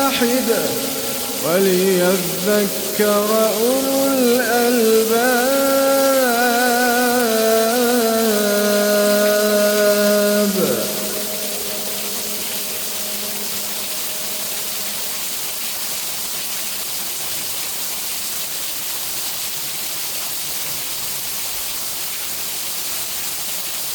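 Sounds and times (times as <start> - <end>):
echoing chanting voice: 0.0 - 16.4
steady rain: 0.0 - 23.9.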